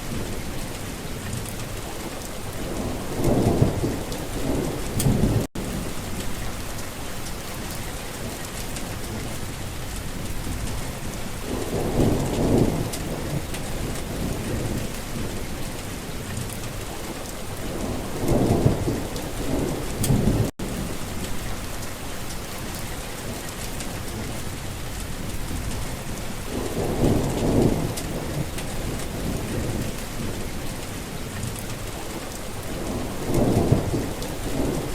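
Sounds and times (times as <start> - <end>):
heavy rain falling: 0.0 - 34.9
thunder rolling: 2.6 - 6.8, 10.1 - 15.6, 17.6 - 21.8, 25.2 - 31.0, 32.6 - 34.9.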